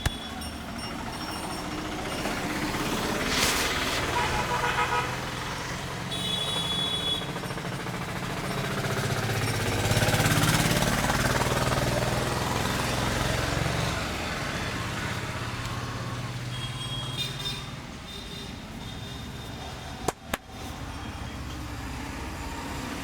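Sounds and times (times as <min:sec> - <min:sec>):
vehicle engine rumbling: 0:00.0 - 0:16.5.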